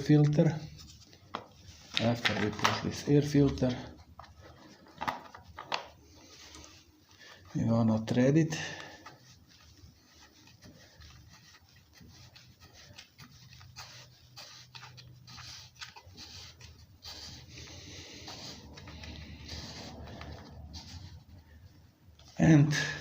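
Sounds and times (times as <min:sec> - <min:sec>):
plastic cover scraping and clicking: 0:01.1 - 0:06.0.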